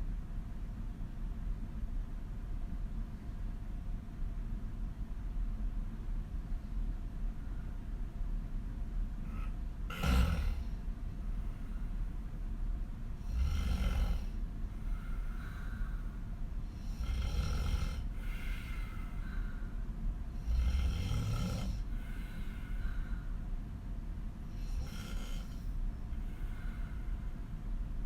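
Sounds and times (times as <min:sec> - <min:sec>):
soft breath out: 0:09.2 - 0:12.1, 0:14.0 - 0:16.4, 0:18.1 - 0:19.9, 0:21.7 - 0:23.6, 0:24.5 - 0:27.8
woman snoring: 0:09.3 - 0:10.8, 0:13.2 - 0:14.4, 0:16.8 - 0:19.3, 0:20.4 - 0:22.8, 0:24.5 - 0:25.7.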